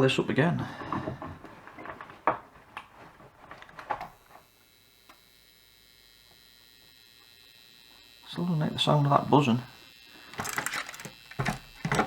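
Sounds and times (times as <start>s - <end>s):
battery charger high-pitched buzz: 4.0s - 12.0s.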